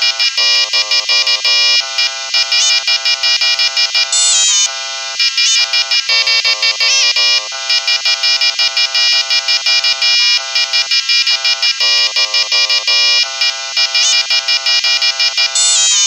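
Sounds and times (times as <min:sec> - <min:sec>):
high beeping synth melody: 0:04.2 - 0:04.7, 0:15.6 - 0:16.0.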